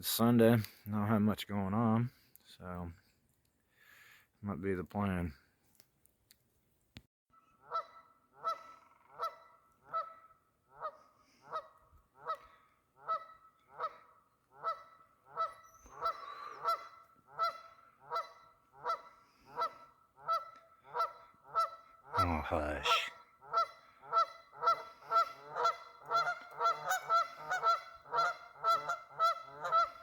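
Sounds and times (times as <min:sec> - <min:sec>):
goose honking: 0:07.6 - 0:30.0.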